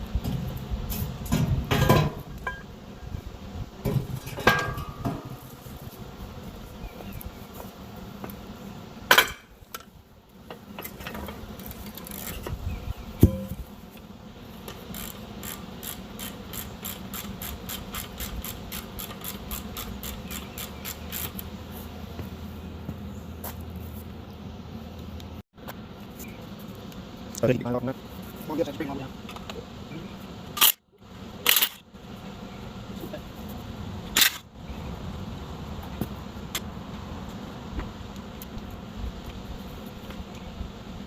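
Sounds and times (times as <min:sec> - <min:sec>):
ratchet wrench clicking: 0:14.9 - 0:21.4.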